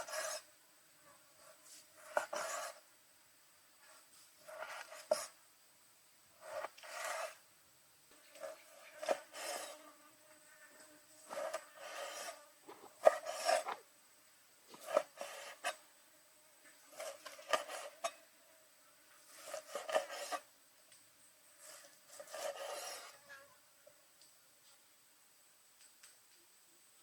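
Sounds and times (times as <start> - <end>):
rough scraping strokes: 0.0 - 0.5, 1.4 - 2.8, 3.8 - 5.4, 6.4 - 7.4, 8.3 - 9.8, 11.2 - 13.8, 14.7 - 15.8, 16.9 - 18.2, 19.2 - 20.5, 21.6 - 23.2.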